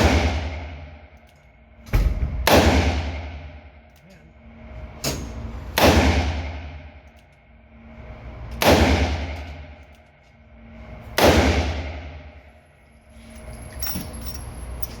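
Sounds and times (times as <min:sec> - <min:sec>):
handgun shots in indoor range: 0:00.0 - 0:04.0, 0:05.0 - 0:07.5, 0:08.5 - 0:10.4, 0:11.1 - 0:12.5.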